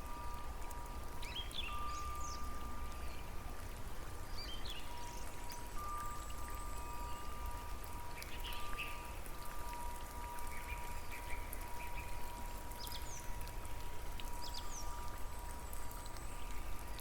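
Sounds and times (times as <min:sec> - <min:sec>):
rain-like water noise: 0:00.0 - 0:17.0.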